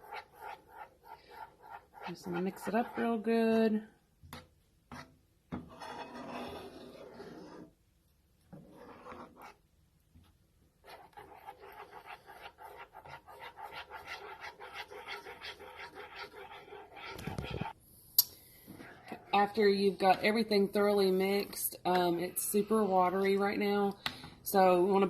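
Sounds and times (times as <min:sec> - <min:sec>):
spoon stirring in a skillet: 0:00.0 - 0:07.7, 0:10.8 - 0:17.8, 0:18.6 - 0:20.4.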